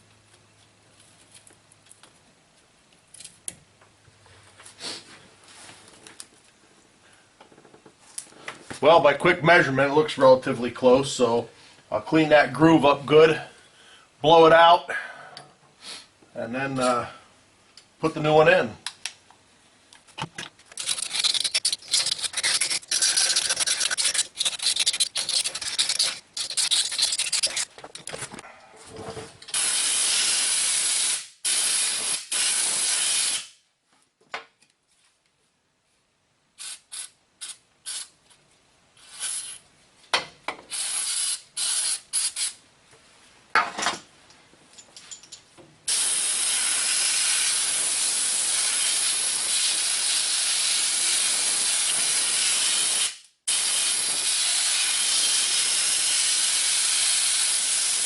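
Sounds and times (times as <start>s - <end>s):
scraping and rubbing: 20.2s - 29.3s
hissing air blasts: 29.5s - 33.5s, 39.0s - 39.6s, 40.7s - 42.6s, 45.9s - 58.0s.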